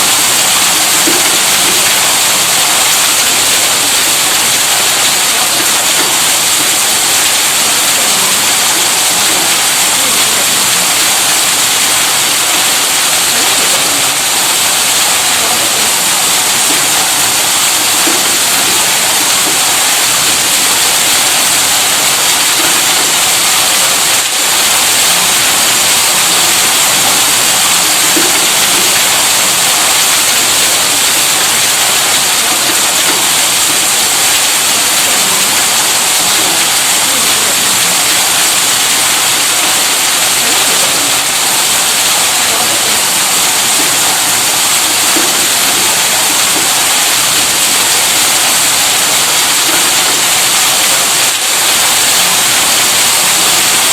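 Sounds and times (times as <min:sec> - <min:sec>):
rushing water hiss: 0:00.0 - 0:53.9.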